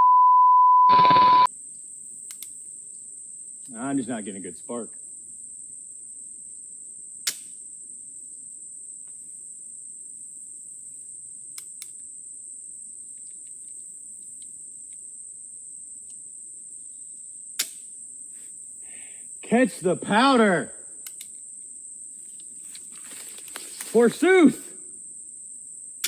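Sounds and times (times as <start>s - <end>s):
high-pitched insect drone: 0.9s - 26.0s
quiet clicks: 2.2s - 2.5s, 21.0s - 21.4s.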